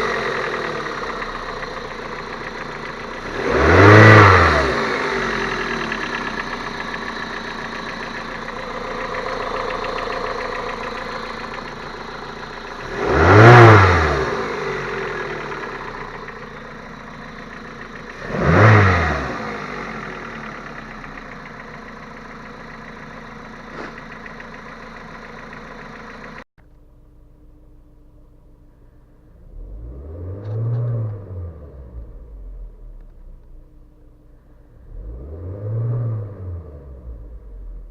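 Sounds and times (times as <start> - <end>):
car engine running and revving: 0.0 - 37.9.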